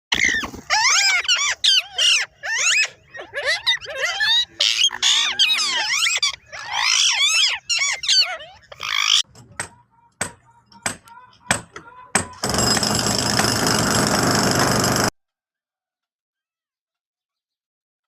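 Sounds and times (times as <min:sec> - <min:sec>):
parrot squawking: 0:00.1 - 0:12.4.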